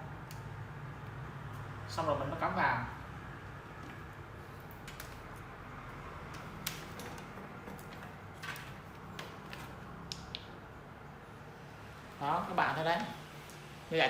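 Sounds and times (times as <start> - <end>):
laptop clicks and taps: 6.3 - 10.6.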